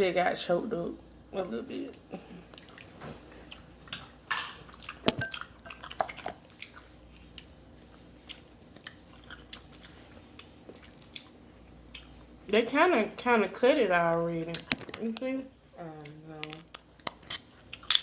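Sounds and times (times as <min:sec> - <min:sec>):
chewing and biting: 0:02.5 - 0:12.2.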